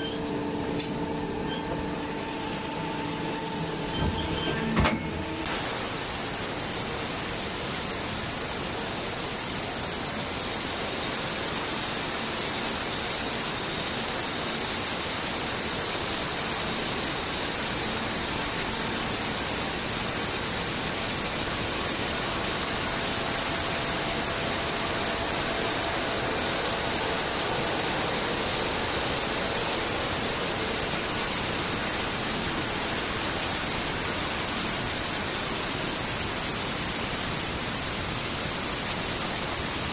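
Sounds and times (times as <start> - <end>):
tube-cutting machine hissing: 5.5 - 35.9.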